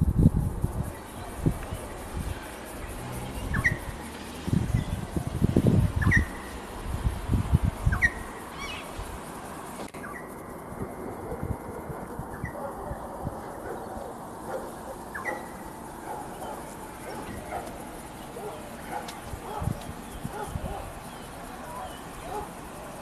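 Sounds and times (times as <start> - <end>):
low rumbling on microphone: 0.0 - 8.0, 18.4 - 21.2
bird chirping: 0.9 - 5.2, 5.9 - 6.6, 7.8 - 9.0, 10.0 - 10.6, 12.3 - 22.5.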